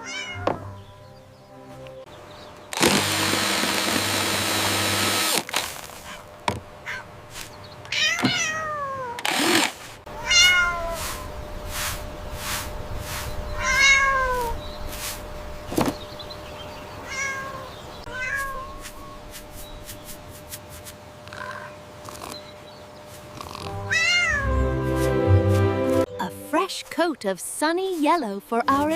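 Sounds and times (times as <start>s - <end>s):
cat meowing: 0.0s - 0.7s, 7.9s - 9.2s, 10.1s - 11.3s, 13.6s - 14.5s, 17.0s - 19.2s, 23.9s - 24.5s.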